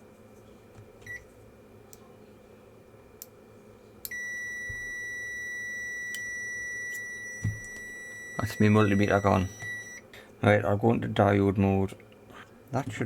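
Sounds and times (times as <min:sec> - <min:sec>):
steady high beep: 0:04.1 - 0:10.0.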